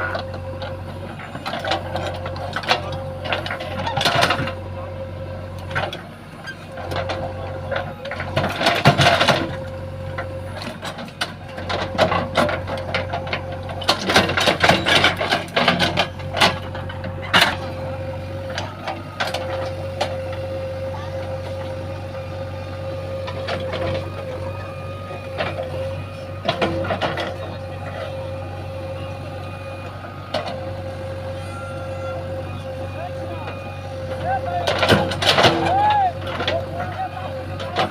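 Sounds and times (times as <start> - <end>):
diesel engine humming and whining: 0.0 - 37.9
clanks and knocks: 6.7 - 20.4, 25.1 - 28.9, 34.6 - 37.9.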